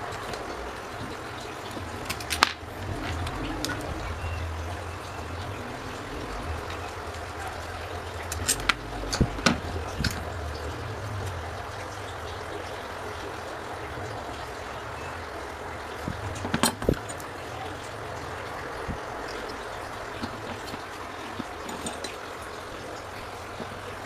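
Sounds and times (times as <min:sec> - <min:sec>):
water trickling: 0:00.0 - 0:24.0
hard objects clicking and knocking: 0:16.1 - 0:17.2, 0:20.2 - 0:22.2.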